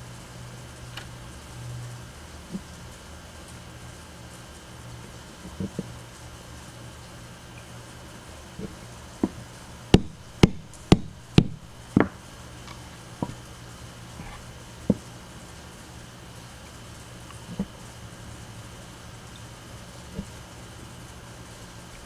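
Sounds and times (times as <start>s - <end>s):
rubber mallet knocking wooden dowels: 8.6s - 12.2s.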